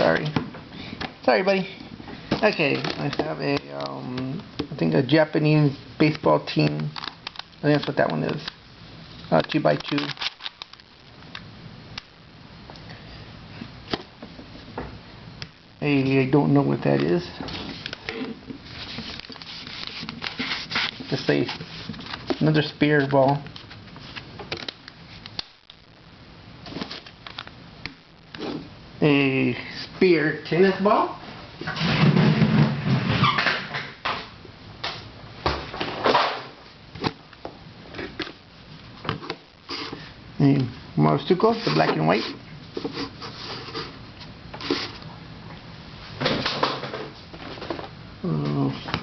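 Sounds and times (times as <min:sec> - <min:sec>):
plastic puzzles being handled: 0:09.2 - 0:10.8
plastic rustle of handling: 0:17.2 - 0:24.3.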